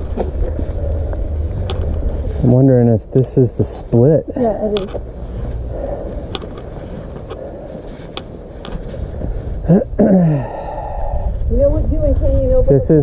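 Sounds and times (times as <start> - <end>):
low microphone rumble: 0.0 - 13.0
footsteps on rocky trail: 4.9 - 9.6.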